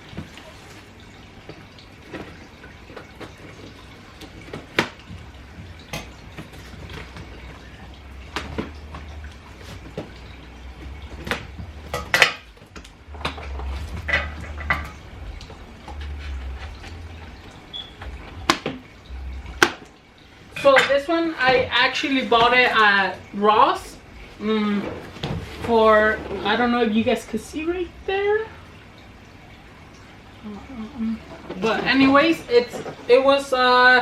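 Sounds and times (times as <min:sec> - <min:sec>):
low handling rumble: 0:05.2 - 0:22.6.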